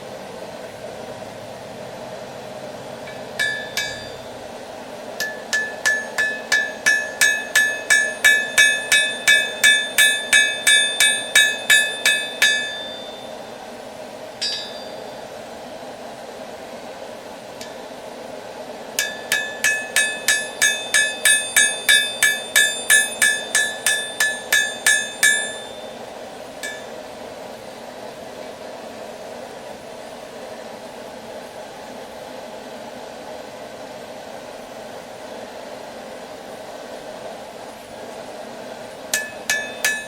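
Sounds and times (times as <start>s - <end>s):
steady low hum: 0.0s - 40.0s
hammer striking steel anvil: 3.1s - 4.3s, 5.2s - 13.4s, 14.4s - 15.2s, 19.0s - 26.0s, 26.6s - 26.9s, 39.1s - 40.0s.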